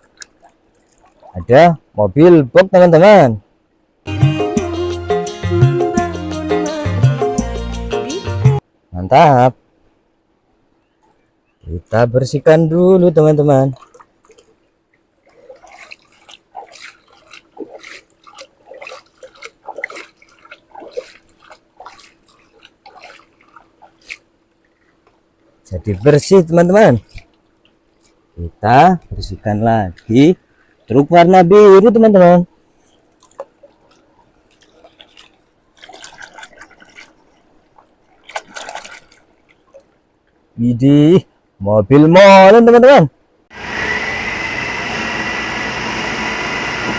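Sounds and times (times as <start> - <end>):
water splashing and dripping: 0.0 - 1.6, 13.7 - 28.4, 32.8 - 40.4
wet scrubbing: 13.8 - 25.2, 25.8 - 28.4, 32.7 - 40.0.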